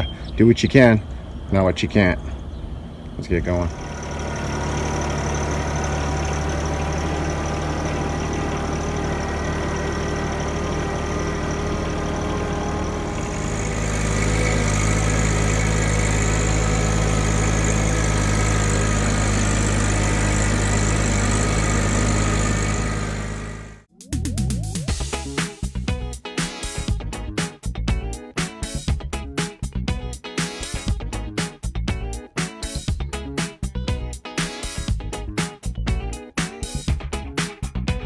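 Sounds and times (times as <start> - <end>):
engine running: 0.0 - 23.9.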